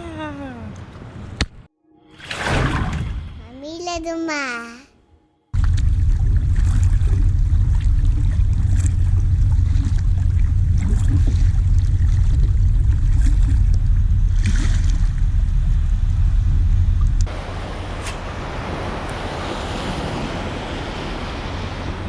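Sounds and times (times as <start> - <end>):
faint water splashes: 5.6 - 15.3
surf and water noise: 5.6 - 22.0
wind buffeting microphone: 5.6 - 22.0.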